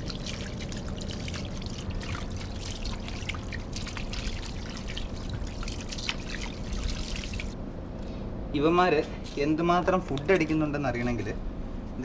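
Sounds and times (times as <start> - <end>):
water running and splashing: 0.0 - 7.6.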